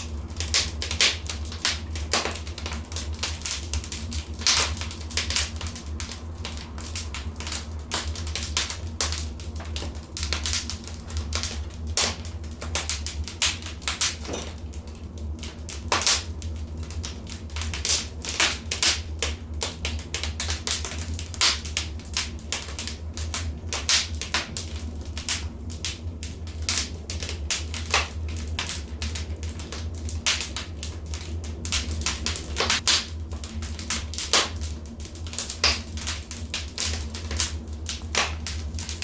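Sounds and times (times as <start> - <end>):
wood fire crackling: 0.0 - 39.0.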